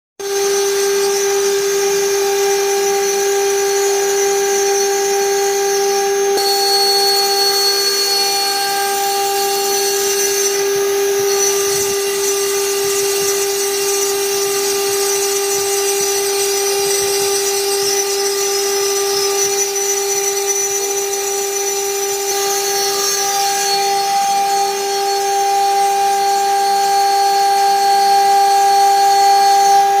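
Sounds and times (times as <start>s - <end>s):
machine spindle whining: 0.2s - 30.0s
hiss of stone cutting: 6.4s - 28.9s.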